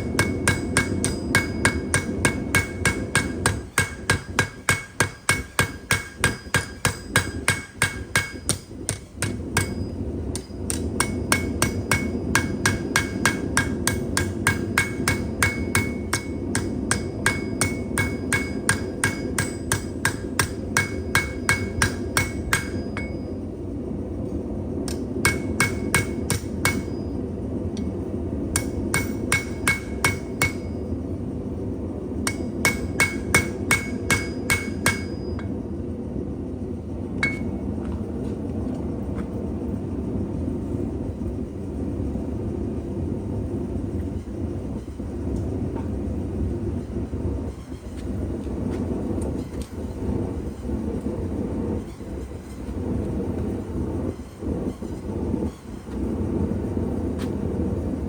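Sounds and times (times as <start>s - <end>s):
hammer striking steel on anvil: 0.0s - 23.3s, 24.9s - 27.2s, 28.5s - 30.8s, 32.2s - 35.5s, 37.2s - 37.6s.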